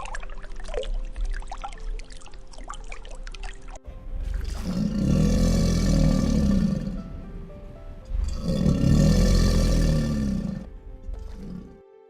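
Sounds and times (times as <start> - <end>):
background music: 0.0 - 12.0
deep animal roars: 4.1 - 11.8.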